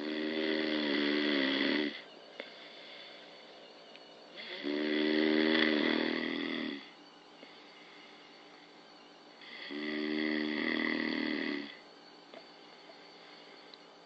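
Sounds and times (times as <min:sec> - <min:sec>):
person snoring: 0:00.0 - 0:03.3, 0:04.4 - 0:07.0, 0:09.4 - 0:11.8.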